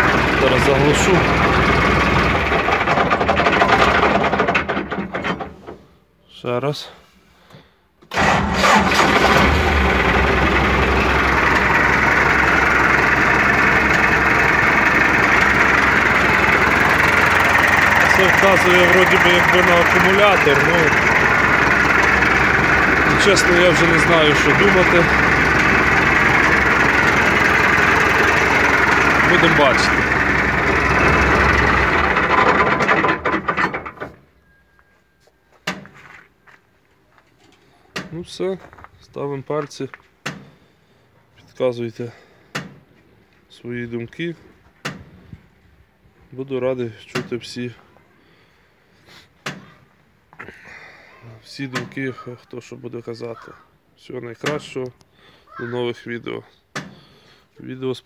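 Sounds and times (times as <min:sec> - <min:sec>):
electric starter cranking: 0:00.0 - 0:05.4, 0:08.1 - 0:34.2
tractor diesel engine idling: 0:00.0 - 0:05.8, 0:08.1 - 0:34.2.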